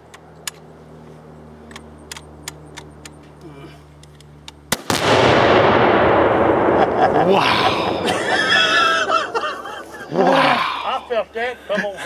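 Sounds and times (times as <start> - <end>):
low steady hum: 0.0 - 12.0
rifle shot: 4.7 - 9.7
exploding target blast rumbling: 4.7 - 10.0.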